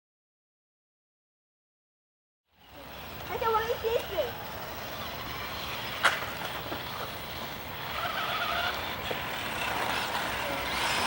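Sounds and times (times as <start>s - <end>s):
toy car electric motors whining: 2.8s - 11.0s.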